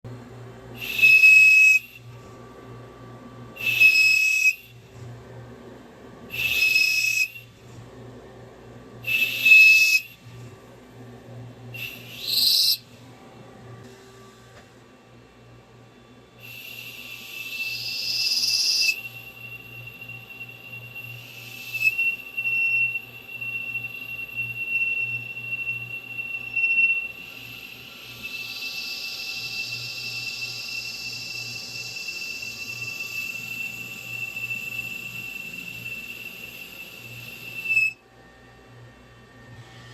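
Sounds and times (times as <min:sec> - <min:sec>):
low machine hum: 0:00.0 - 0:39.9
lathe cutting metal squeal: 0:00.8 - 0:01.9, 0:03.6 - 0:04.6, 0:06.3 - 0:07.5, 0:09.0 - 0:10.1, 0:11.8 - 0:12.8, 0:16.4 - 0:38.0
high whistling bursts: 0:00.8 - 0:02.1, 0:03.5 - 0:04.8, 0:06.3 - 0:07.6, 0:09.0 - 0:10.4, 0:11.7 - 0:12.9, 0:16.4 - 0:38.5
hiss: 0:16.4 - 0:19.0, 0:27.0 - 0:37.7.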